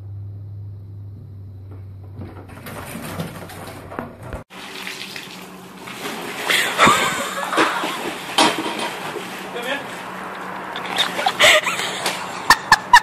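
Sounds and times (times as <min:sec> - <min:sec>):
splashing water: 0:04.5 - 0:12.4.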